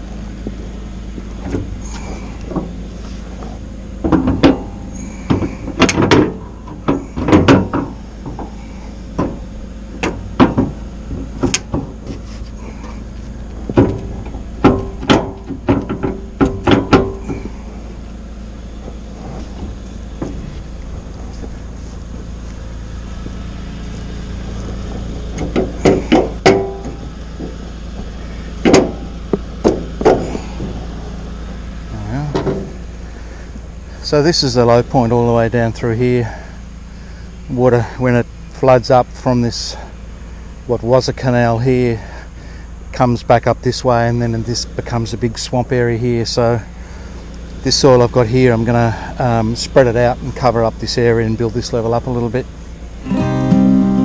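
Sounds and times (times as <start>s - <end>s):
truck engine running: 0.0s - 37.6s, 52.5s - 54.0s.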